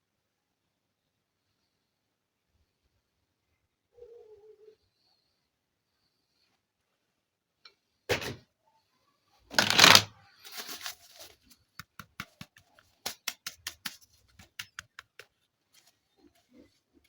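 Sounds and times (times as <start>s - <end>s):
plastic packaging crinkling: 9.5s - 11.6s
sharp plastic clicks: 9.6s - 10.1s.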